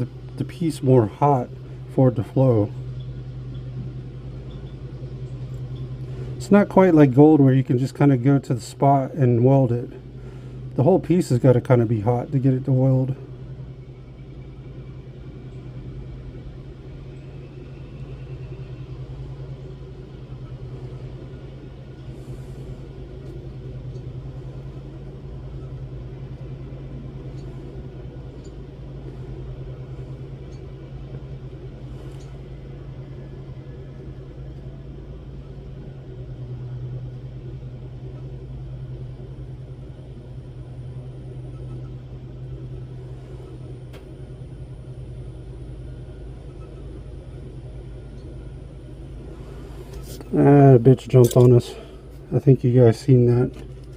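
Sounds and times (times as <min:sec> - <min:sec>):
torch flame burning: 0:38.8 - 0:52.3.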